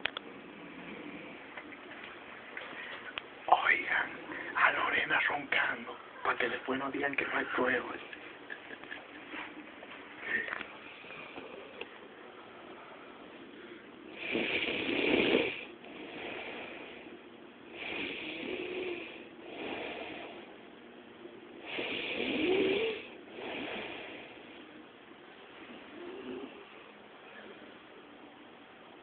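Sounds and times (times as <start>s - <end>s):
soft breaths: 0.3s - 5.8s, 9.0s - 20.7s, 21.5s - 28.0s
woman snoring: 14.1s - 17.0s, 17.8s - 20.4s, 21.7s - 24.4s.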